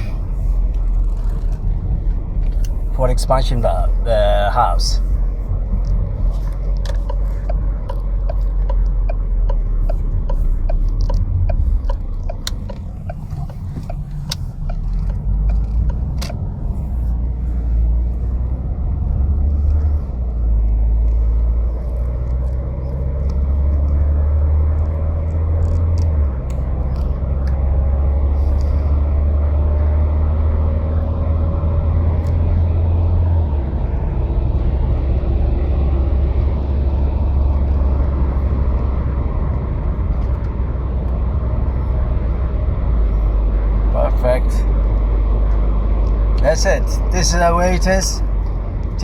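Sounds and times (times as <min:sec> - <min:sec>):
car engine idling: 0:00.0 - 0:49.0
light regular ticking: 0:00.2 - 0:29.0
sharp clicks: 0:06.6 - 0:16.5.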